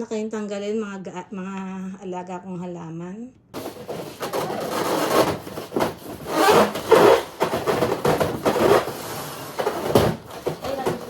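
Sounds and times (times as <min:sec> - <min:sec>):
heavy objects scraping across floor: 0:03.6 - 0:11.0.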